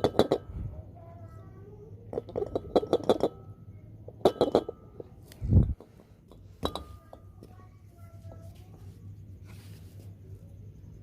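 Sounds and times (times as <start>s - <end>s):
metal clinks and knocks: 0.0s - 0.6s, 2.0s - 8.4s.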